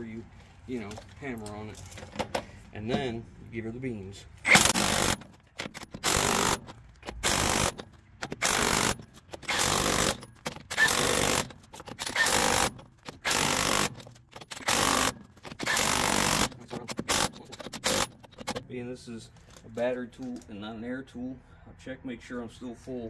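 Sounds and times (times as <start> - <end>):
impact wrench hammering: 4.5 - 18.6.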